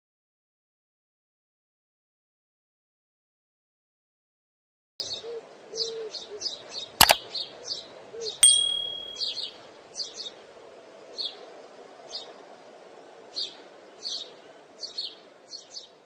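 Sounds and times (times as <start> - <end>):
sharp click: 7.0 - 7.2, 8.4 - 9.4
ringing ding: 8.4 - 9.5.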